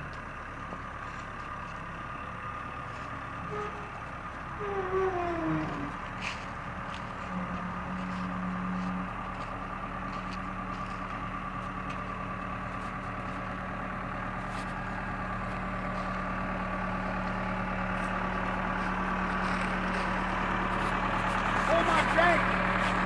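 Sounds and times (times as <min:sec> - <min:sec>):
backhoe engine running: 0:00.0 - 0:23.0.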